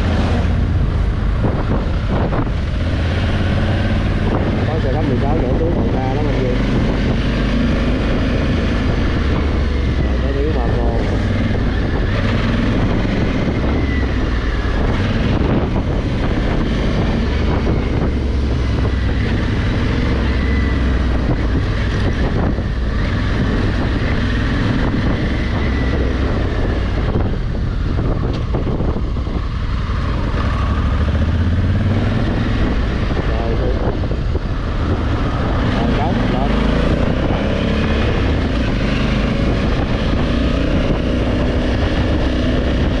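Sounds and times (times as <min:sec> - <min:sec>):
motorcycle engine rumble: 0:00.0 - 0:43.0
wind noise on microphone: 0:00.0 - 0:43.0.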